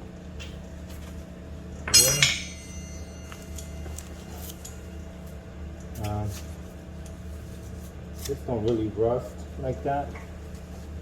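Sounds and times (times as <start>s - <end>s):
steady low hum: 0.0s - 11.0s
metal clinking against metal: 1.9s - 4.8s.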